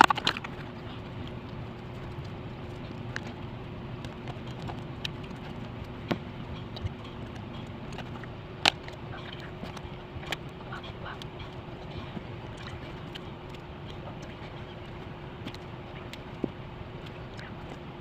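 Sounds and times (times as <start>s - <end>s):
low background hum: 0.0s - 18.0s.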